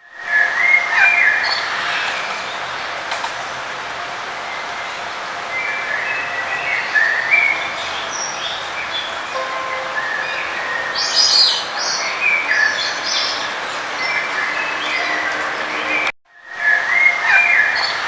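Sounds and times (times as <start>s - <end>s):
songbirds chirping and warbling: 0.2s - 18.0s.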